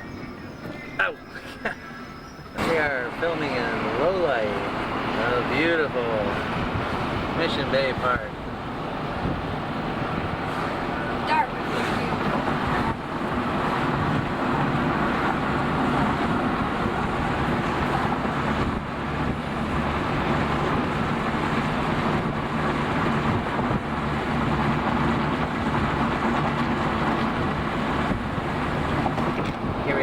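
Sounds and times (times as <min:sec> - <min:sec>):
car road and engine noise: 0:00.0 - 0:30.0.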